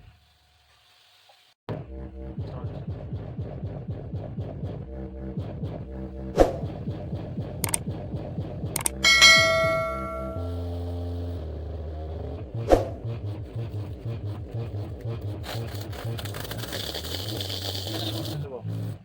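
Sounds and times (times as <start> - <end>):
ringing bell-like chime: 9.0 - 10.7.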